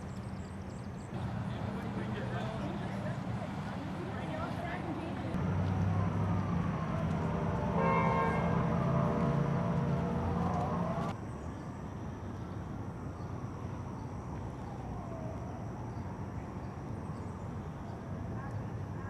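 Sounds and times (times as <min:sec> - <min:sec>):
outdoor background noise: 0:00.0 - 0:19.0
horn tone: 0:07.2 - 0:11.1.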